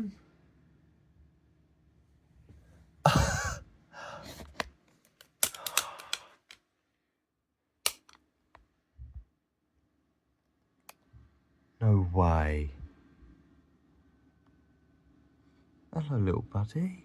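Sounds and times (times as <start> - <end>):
scattered clicks: 5.2 - 6.6, 7.9 - 8.2.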